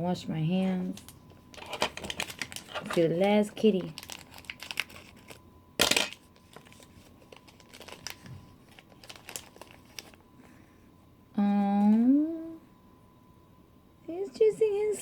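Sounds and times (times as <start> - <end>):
wrapper crinkling and rustling: 0.9 - 10.2
packaging tearing: 1.0 - 10.2.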